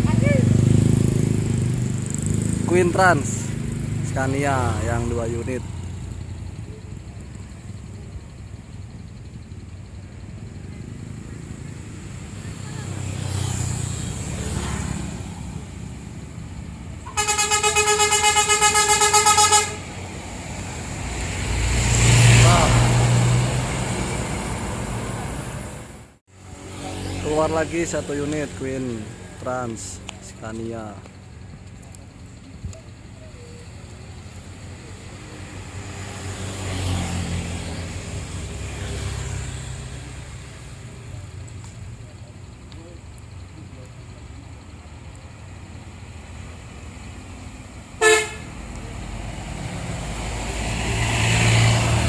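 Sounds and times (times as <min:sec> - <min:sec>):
bus rumbling: 0:00.0 - 0:52.0
musical bus horn fluttering note: 0:17.0 - 0:19.9, 0:48.0 - 0:48.5.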